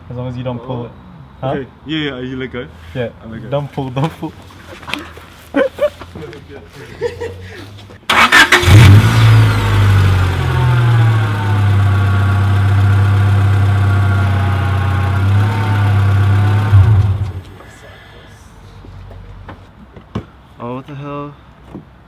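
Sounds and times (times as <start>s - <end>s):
car engine cranking and idling: 8.1s - 17.8s.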